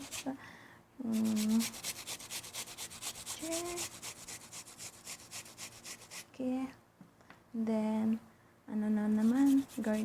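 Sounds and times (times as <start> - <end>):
rapid scraping strokes: 1.2 - 6.3, 9.2 - 10.0.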